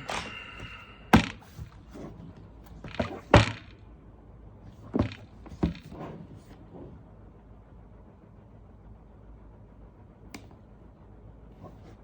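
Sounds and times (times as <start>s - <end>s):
box thunks and knocks on table: 4.9s - 6.1s.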